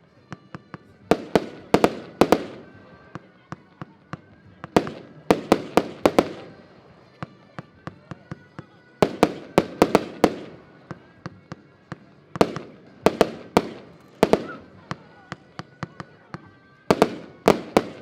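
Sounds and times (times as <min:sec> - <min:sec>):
firework bangs: 0:01.1 - 0:02.9, 0:04.6 - 0:06.7, 0:09.0 - 0:10.8, 0:12.4 - 0:15.1, 0:16.9 - 0:18.0.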